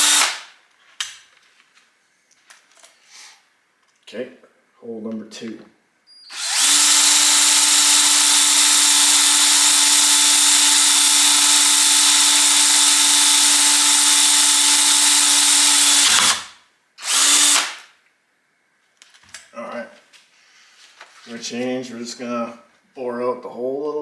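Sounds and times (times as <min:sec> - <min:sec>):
power drill drilling: 0:00.0 - 0:00.5, 0:06.3 - 0:17.8.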